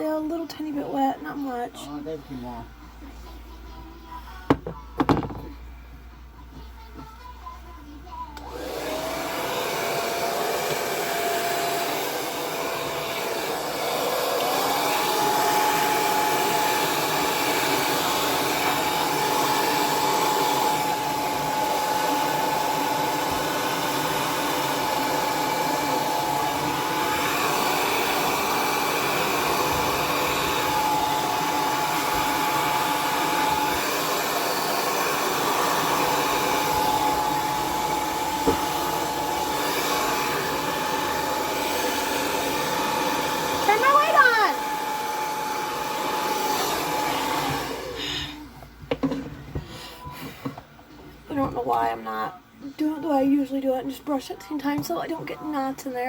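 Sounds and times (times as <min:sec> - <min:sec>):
hair dryer running: 0:08.4 - 0:50.7.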